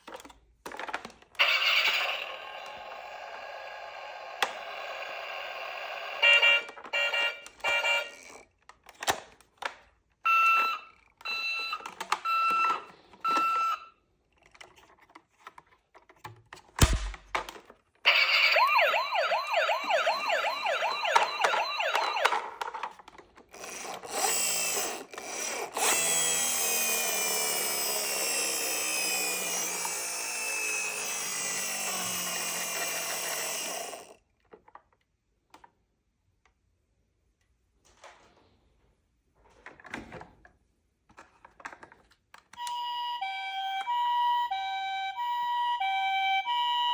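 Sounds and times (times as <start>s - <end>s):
electronic siren falling in pitch: 18.1s - 22.5s
fast warbling siren: 18.1s - 22.5s.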